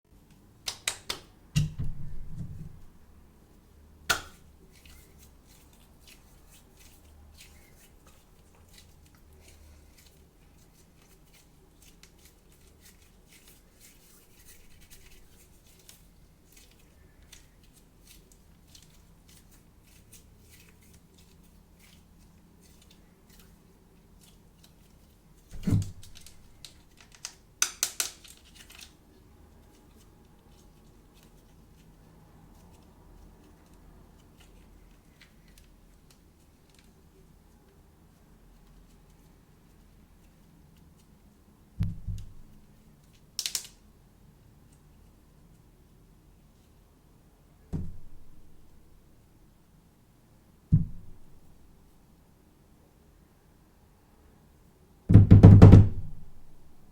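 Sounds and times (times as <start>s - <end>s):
packaging rustling: 25.5s - 27.4s
heavy knock: 55.1s - 56.1s.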